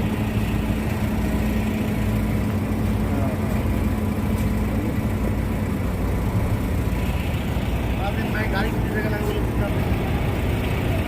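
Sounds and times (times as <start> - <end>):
heavy diesel engine running: 0.0 - 11.0.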